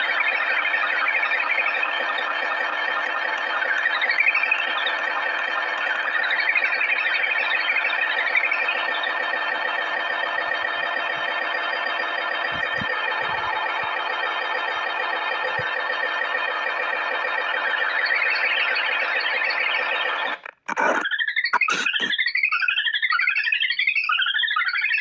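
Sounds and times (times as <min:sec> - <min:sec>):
electronic buzzing drone: 0:01.1 - 0:14.6.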